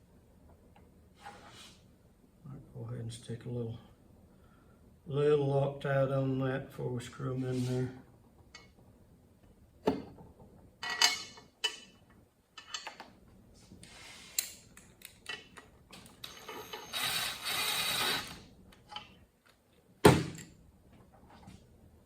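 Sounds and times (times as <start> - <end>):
clinking steel bolts and tools: 10.8 - 12.0.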